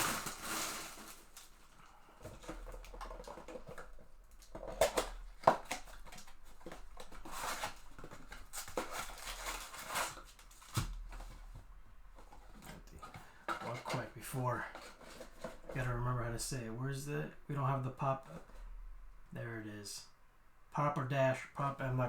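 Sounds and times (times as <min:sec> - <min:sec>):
packaging rustling and crinkling: 0:00.0 - 0:15.9.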